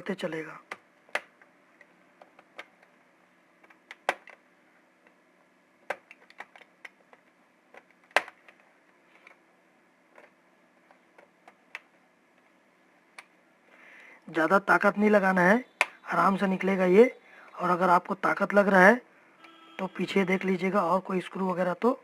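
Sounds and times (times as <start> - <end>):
plastic clicks and snaps: 0.6 - 3.0, 5.8 - 9.4, 10.1 - 12.5, 13.1 - 13.4.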